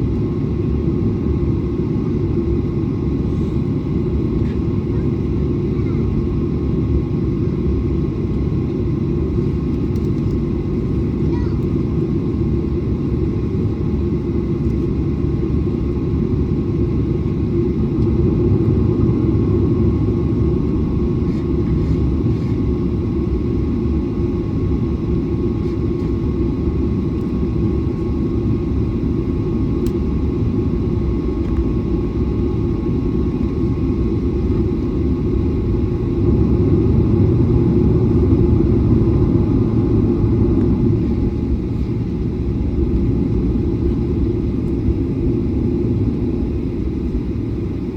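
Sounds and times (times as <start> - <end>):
jet engines rumbling: 0.0 - 47.9
faint steady whine: 27.8 - 47.9.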